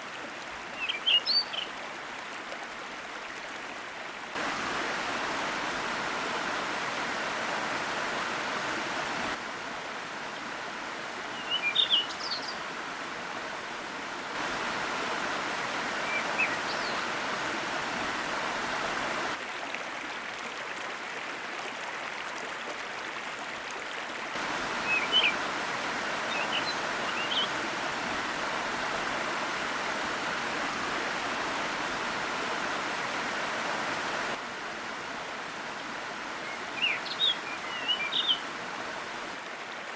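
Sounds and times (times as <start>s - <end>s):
waterfall rushing: 4.3s - 19.5s, 24.2s - 39.9s
bird chirps: 11.4s - 12.6s, 36.8s - 38.4s.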